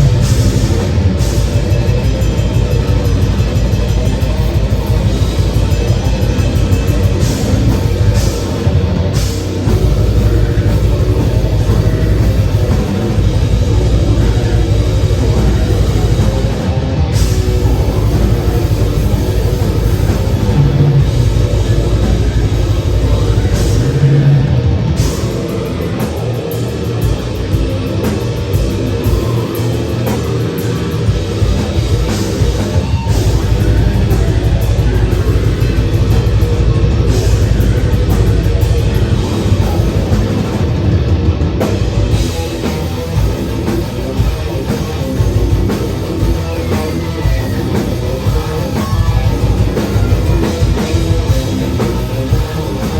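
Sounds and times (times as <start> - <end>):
distorted electric guitars: 0.0 - 52.9
fast drum kit: 0.0 - 52.9.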